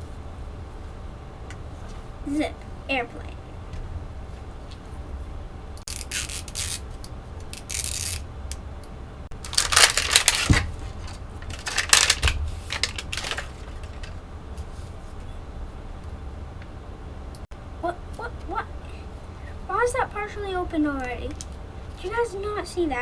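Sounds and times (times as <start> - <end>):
plastic packaging crinkling and tearing: 9.4 - 14.2.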